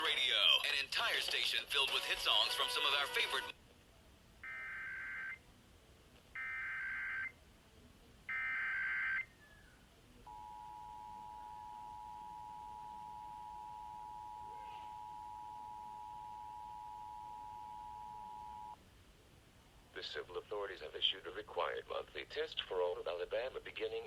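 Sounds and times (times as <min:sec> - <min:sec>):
steady two-tone beep: 0:10.3 - 0:18.8.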